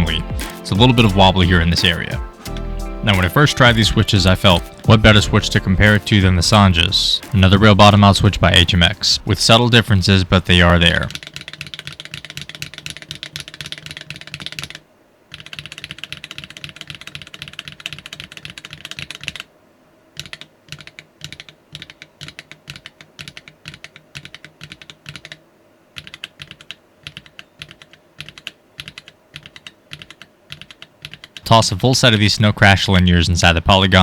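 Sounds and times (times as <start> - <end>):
mechanical keyboard typing: 10.8 - 19.5, 20.2 - 25.4, 26.0 - 31.5.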